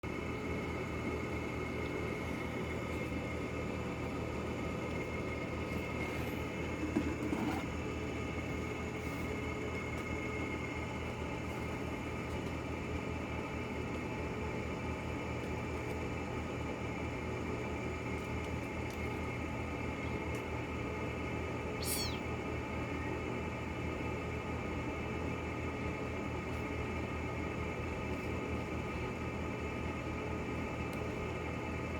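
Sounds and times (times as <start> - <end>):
steady mechanical hum: 0.0 - 31.9
high falling chirp: 21.8 - 22.3.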